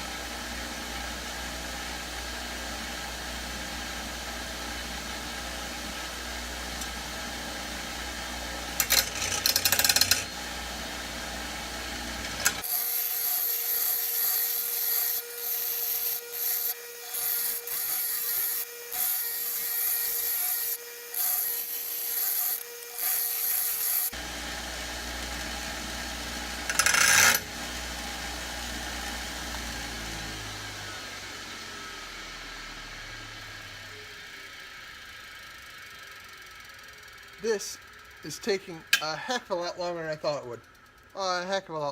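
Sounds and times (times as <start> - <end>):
grinding wheel motor humming: 4.0 - 12.7, 22.9 - 31.2
knife hissing on grinding wheel: 8.7 - 24.2, 26.6 - 27.5.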